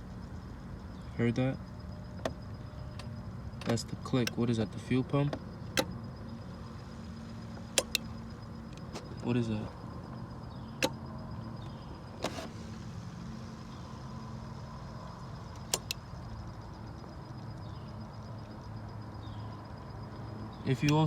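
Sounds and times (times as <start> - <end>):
battery charger hum and whine: 0.0 - 21.0
sharp clicks: 7.6 - 9.2, 15.5 - 16.2.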